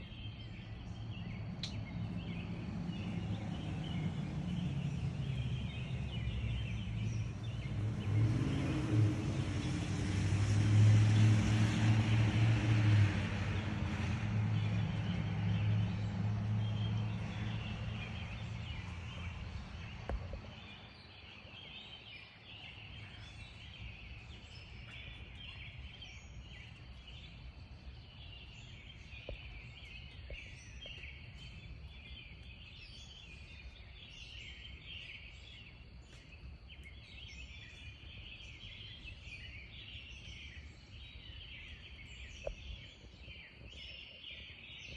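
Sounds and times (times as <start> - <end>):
birds chirping: 0.0 - 44.9
passing vehicle: 0.3 - 21.8.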